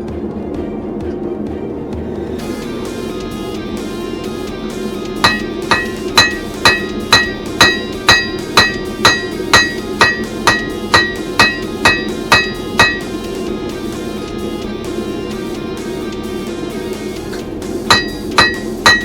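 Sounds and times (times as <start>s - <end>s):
hammer striking steel on anvil: 5.2s - 13.4s, 17.3s - 19.0s.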